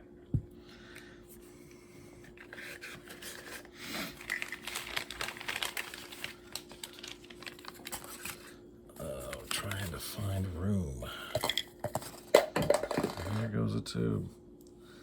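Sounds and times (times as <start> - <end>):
faint steady hum: 0.0 - 15.0
knives and packaging handled: 2.3 - 8.5.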